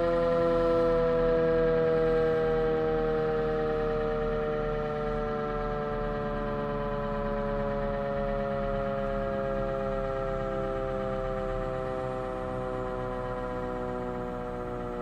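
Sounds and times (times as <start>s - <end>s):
tornado siren two-tone chord: 0.0s - 15.0s.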